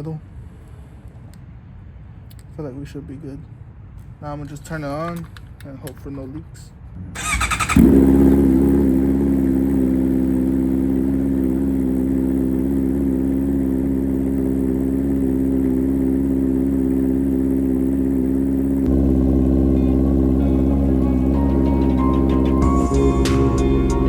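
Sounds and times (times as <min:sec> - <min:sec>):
motorcycle engine idling: 0:07.2 - 0:24.0.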